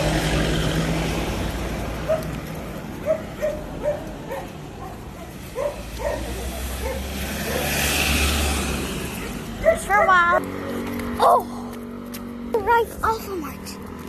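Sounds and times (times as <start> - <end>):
dog barking: 2.0 - 2.3, 3.0 - 7.8, 9.6 - 10.2.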